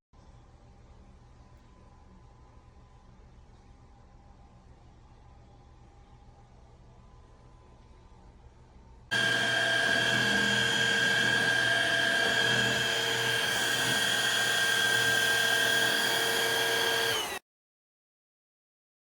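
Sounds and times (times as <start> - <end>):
vacuum cleaner motor whining: 9.1 - 17.4.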